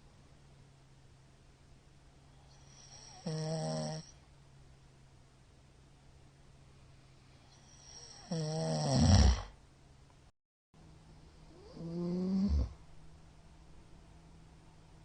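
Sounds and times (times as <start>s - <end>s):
man snoring loudly: 2.6s - 4.1s, 7.7s - 9.5s, 11.6s - 12.8s.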